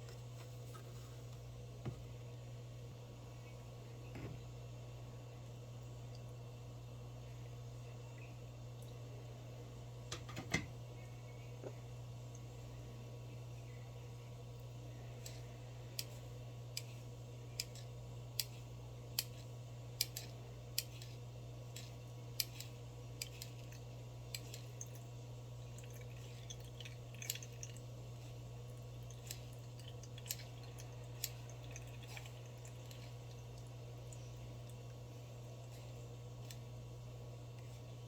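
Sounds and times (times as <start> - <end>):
steady low hum: 0.0 - 38.0.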